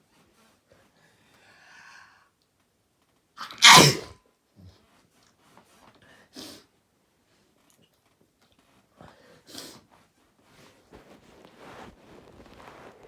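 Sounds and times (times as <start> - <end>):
loud sneeze: 3.4 - 4.1.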